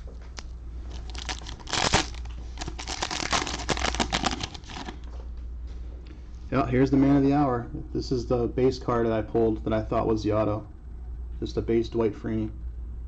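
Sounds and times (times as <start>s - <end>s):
cellophane crinkling: 0.3s - 5.1s
cellophane wrapper tearing: 0.4s - 5.1s.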